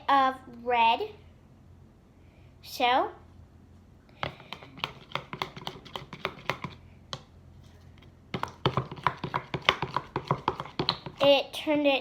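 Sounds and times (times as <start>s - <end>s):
slime squelching in a bowl: 4.2s - 11.6s.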